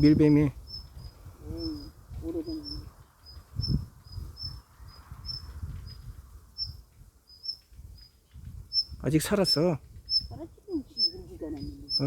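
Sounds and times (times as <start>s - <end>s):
high chirping: 0.6s - 6.0s, 6.6s - 8.1s, 8.7s - 12.0s.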